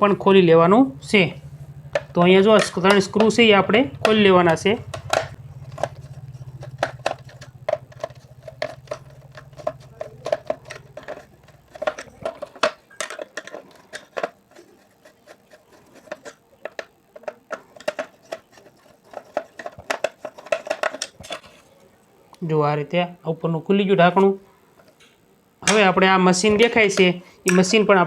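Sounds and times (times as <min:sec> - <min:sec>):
low steady hum: 0:00.0 - 0:28.0
screwdriver clicking and scraping: 0:04.9 - 0:21.4.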